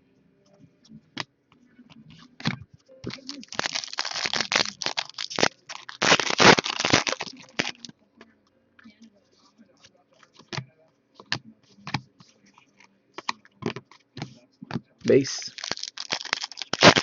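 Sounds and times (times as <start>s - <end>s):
wrapper tearing and crumpling: 3.1s - 7.9s, 15.2s - 17.0s
cards clicking and tapping: 10.4s - 12.1s, 13.2s - 17.0s.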